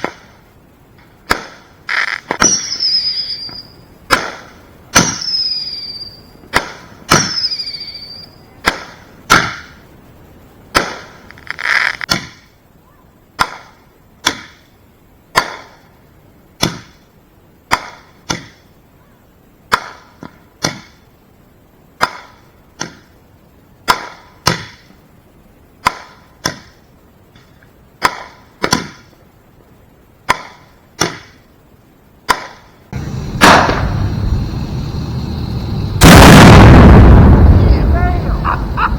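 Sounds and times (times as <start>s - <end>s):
firework mortar bangs: 0.0s - 9.9s, 10.6s - 12.6s, 32.2s - 38.9s
falling firework whistles: 1.3s - 9.9s, 10.9s - 13.2s, 33.0s - 38.9s
firework boom with rumble: 33.0s - 38.9s.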